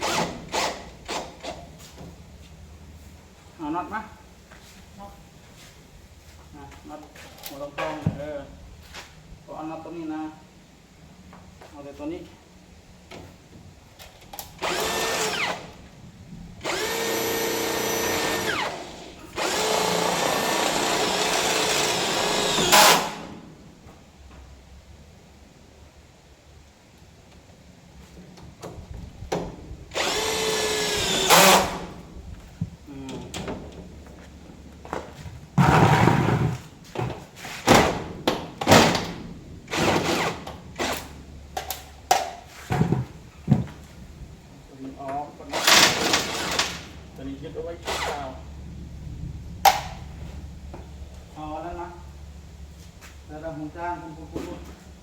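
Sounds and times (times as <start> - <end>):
power drill driving screws: 0.0 - 1.6, 14.4 - 15.8, 16.6 - 23.4, 29.9 - 32.0, 39.7 - 41.1, 45.5 - 46.9, 47.8 - 48.3
scraping and knocking: 35.6 - 37.2.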